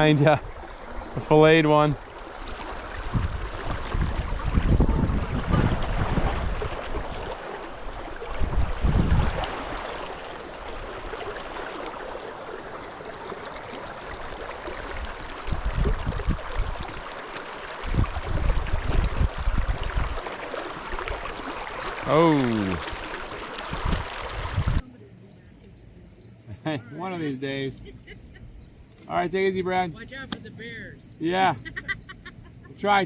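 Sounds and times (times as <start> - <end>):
river current rushing: 0.0 - 24.8
wind buffeting microphone: 2.8 - 9.9, 14.7 - 17.2, 17.8 - 20.3, 22.4 - 24.8.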